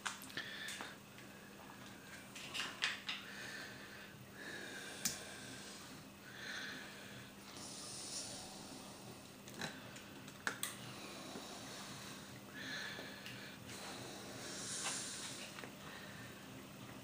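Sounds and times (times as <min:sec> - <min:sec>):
faint steady hum: 0:00.0 - 0:17.0
engine breathy hissing: 0:03.3 - 0:09.4, 0:10.8 - 0:16.4.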